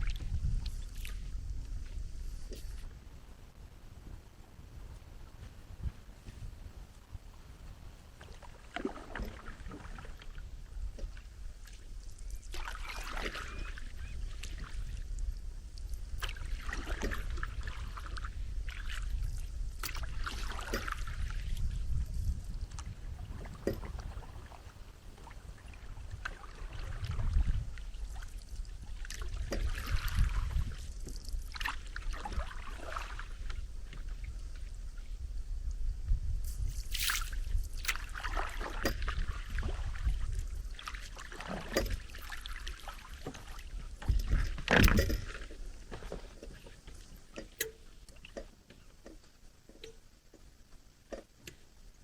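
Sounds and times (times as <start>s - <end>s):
low steady rumble: 0.0s - 12.4s
water splashing: 8.2s - 10.4s, 12.4s - 14.9s, 19.8s - 21.8s, 23.2s - 33.5s, 36.8s - 48.5s.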